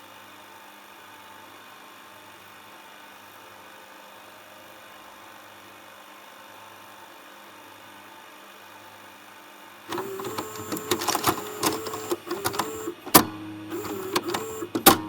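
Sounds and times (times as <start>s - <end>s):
faint hum: 9.9s - 15.0s
mechanical clatter: 9.9s - 15.0s
motor whirring: 9.9s - 15.0s
sharp mechanism clicks: 9.9s - 15.0s.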